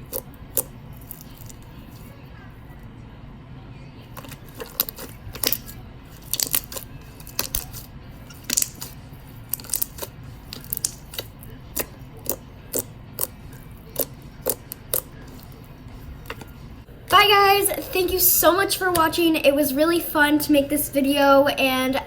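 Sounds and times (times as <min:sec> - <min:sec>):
slime popping and clicking: 0:04.2 - 0:13.4, 0:14.0 - 0:15.5.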